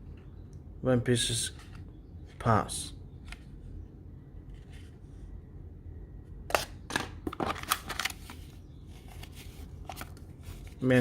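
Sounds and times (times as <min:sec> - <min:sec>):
low hum: 0:00.0 - 0:10.8
packaging crinkling and clicking: 0:06.6 - 0:10.3.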